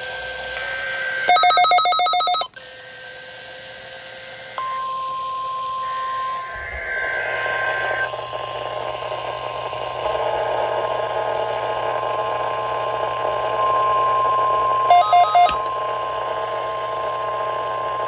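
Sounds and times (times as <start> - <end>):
steady high alarm tone: 1.3 - 2.5, 14.9 - 15.7.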